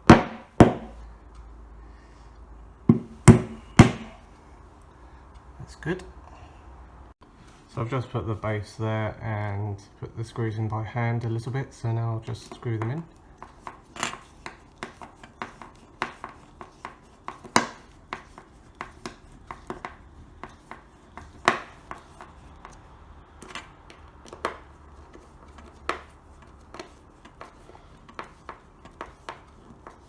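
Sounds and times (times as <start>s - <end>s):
sharp knocks: 0.0s - 1.0s, 2.9s - 4.2s.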